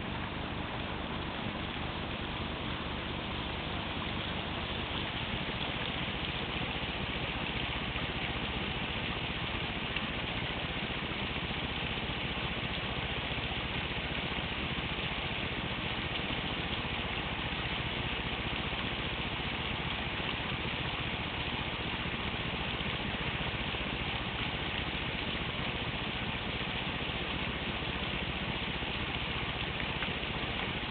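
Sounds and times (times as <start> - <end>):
running water rushing: 0.0 - 30.9.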